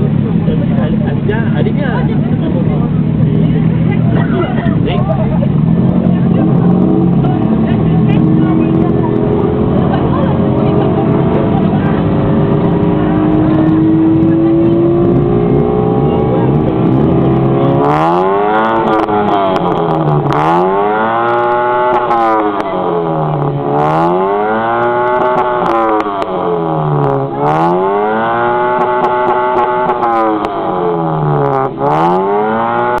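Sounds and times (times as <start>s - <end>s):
car engine revving: 0.0s - 33.0s.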